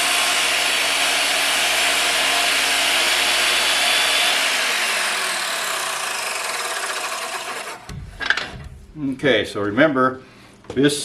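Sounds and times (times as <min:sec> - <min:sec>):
power saw cutting wood: 0:00.0 - 0:07.9.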